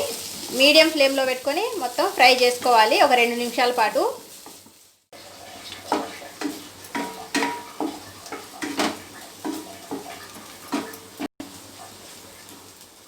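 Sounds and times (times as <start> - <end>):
garlic sizzling in a pan: 0.0 - 13.0
spoon scraping and knocking pan: 4.3 - 12.7.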